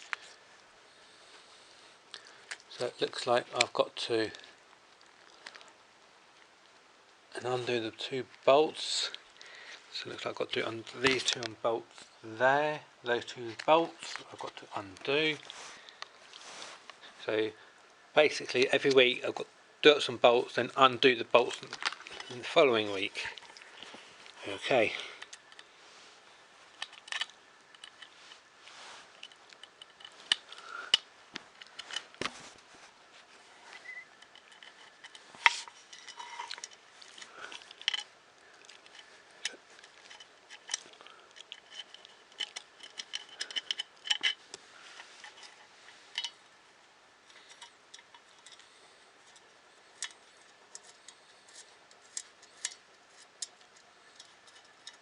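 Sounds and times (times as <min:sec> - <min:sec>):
hand tool and bolts clinking: 0:38.8 - 0:44.5.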